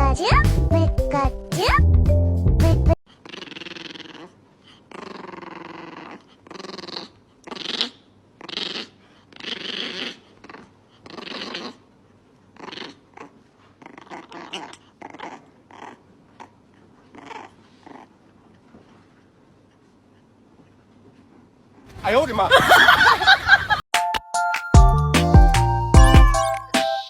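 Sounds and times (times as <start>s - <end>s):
dog growling: 3.1s - 11.9s, 12.5s - 18.3s.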